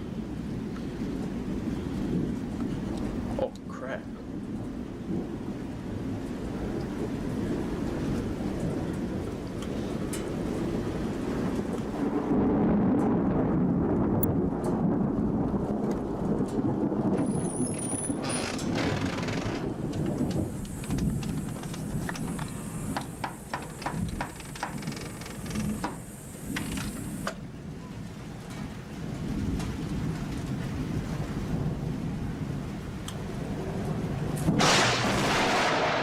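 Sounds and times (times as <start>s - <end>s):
thunder rumbling: 0.0s - 3.4s, 4.0s - 36.0s
rain hissing and pattering: 0.0s - 36.0s.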